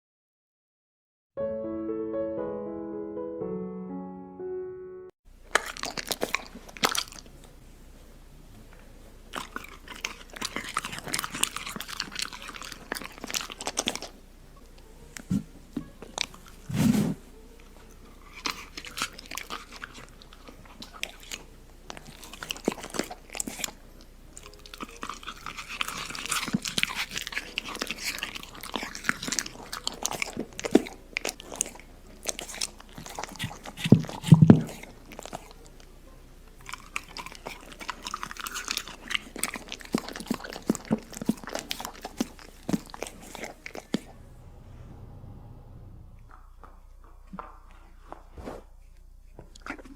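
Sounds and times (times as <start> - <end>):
dog crunching and chewing: 5.4 - 7.6, 9.3 - 14.3, 15.2 - 16.7, 17.6 - 44.2, 49.0 - 49.9
low thumps: 44.0 - 46.8.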